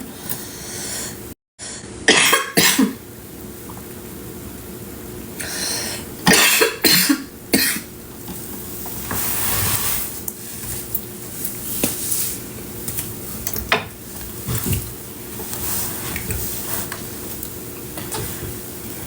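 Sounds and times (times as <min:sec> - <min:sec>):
woman coughing: 0:02.1 - 0:03.0, 0:06.2 - 0:07.9.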